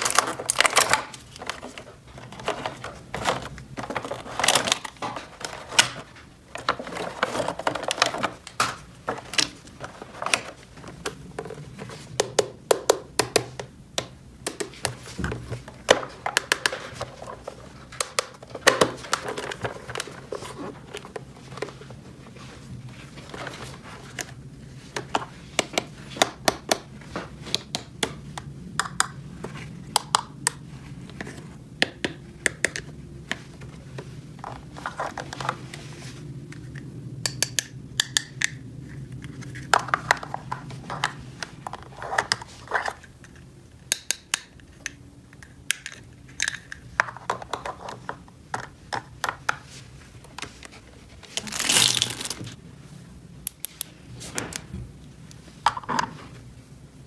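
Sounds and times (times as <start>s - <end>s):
plastic pieces scraping: 0.0s - 10.7s, 50.5s - 52.6s.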